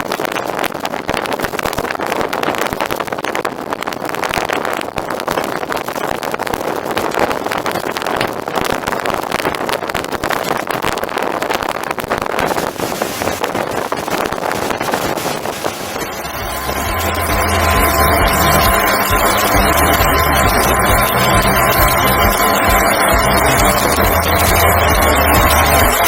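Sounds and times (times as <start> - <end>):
rapid fluttering: 9.5 - 26.0
wind rushing: 12.1 - 26.0
boat motor running: 14.6 - 26.0.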